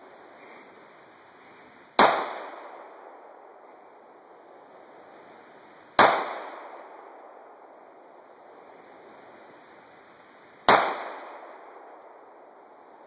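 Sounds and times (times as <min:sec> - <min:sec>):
pistol shots with echo: 0:02.0 - 0:03.3, 0:06.0 - 0:07.2, 0:10.7 - 0:12.0.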